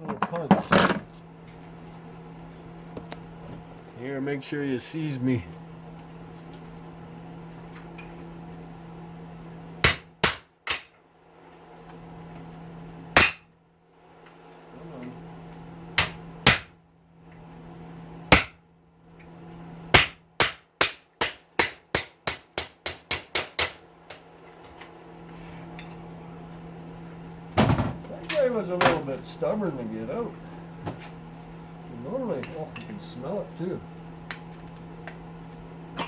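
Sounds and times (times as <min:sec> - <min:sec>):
hammer striking metal punch: 0:09.8 - 0:11.0, 0:13.2 - 0:13.5, 0:16.0 - 0:16.7, 0:18.3 - 0:18.6, 0:19.9 - 0:23.8.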